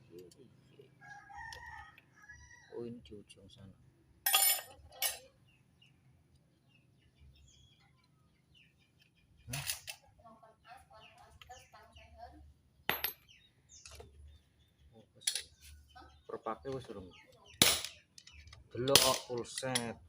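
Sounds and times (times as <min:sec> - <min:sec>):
metallic clanks of tools: 0:04.3 - 0:05.3, 0:15.2 - 0:15.6, 0:17.6 - 0:19.9.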